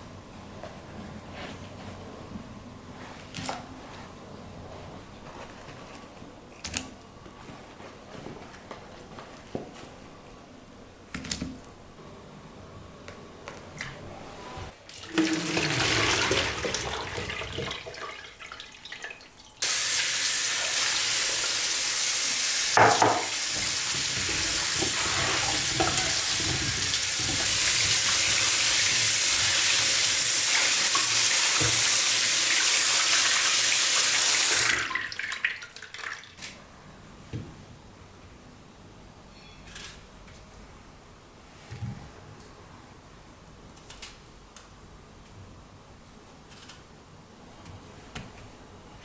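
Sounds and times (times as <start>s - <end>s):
tap water running into sink: 14.9s - 36.2s.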